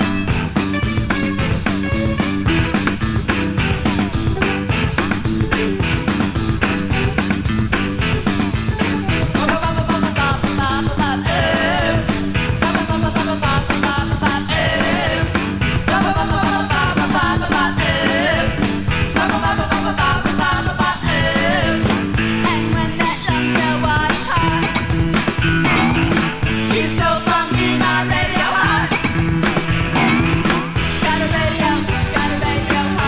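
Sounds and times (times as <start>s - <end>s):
repeating bass line: 0.0s - 33.0s
steady drum beat: 0.0s - 33.0s
person singing: 8.8s - 24.9s, 26.6s - 29.6s, 30.8s - 33.0s.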